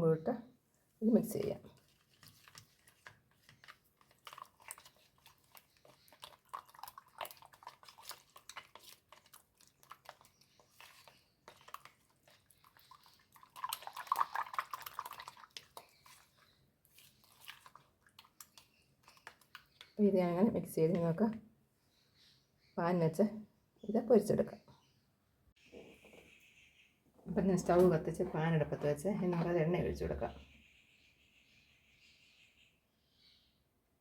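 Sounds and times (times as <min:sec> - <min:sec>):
wet squishing: 0:01.4 - 0:20.0.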